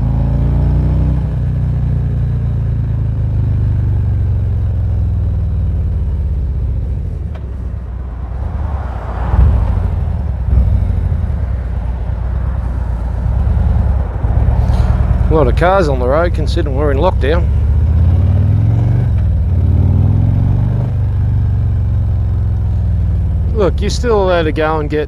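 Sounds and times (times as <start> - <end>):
motorcycle engine running: 0.0 - 8.8, 9.4 - 25.0
wind rushing: 7.5 - 15.5.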